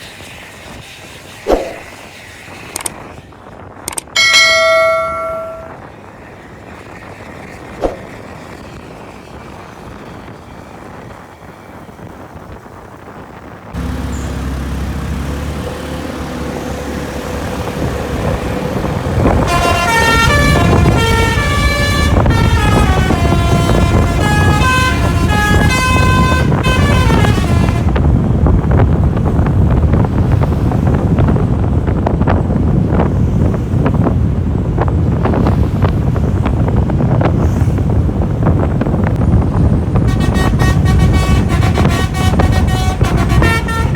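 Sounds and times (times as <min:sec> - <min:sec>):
loud engine rumble: 0:13.7 - 0:43.9
bus horn playing fast tune: 0:19.2 - 0:28.2, 0:40.0 - 0:43.9.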